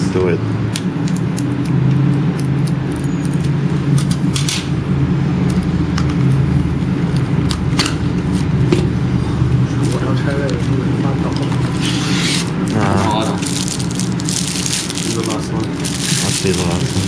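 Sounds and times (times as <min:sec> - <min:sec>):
steady low hum: 0:00.0 - 0:17.0
packaging crinkling and clicking: 0:13.4 - 0:17.0.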